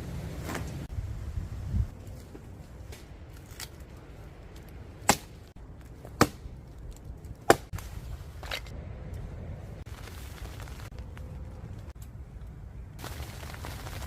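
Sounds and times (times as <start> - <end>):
blade chopping wood: 5.0 - 5.3.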